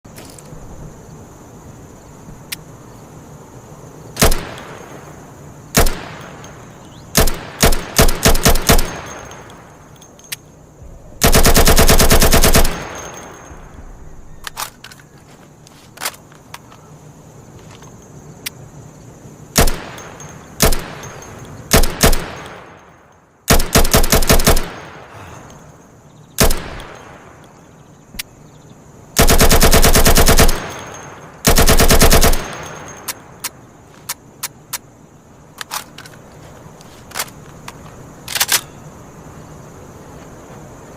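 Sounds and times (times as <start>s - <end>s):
rifle single shots: 4.2s - 5.1s, 5.7s - 9.7s, 11.2s - 13.5s, 19.6s - 22.8s, 23.5s - 25.2s, 26.4s - 27.4s, 29.2s - 33.2s
automatic rifle bursts: 11.2s - 13.2s, 23.5s - 24.8s, 29.2s - 32.8s.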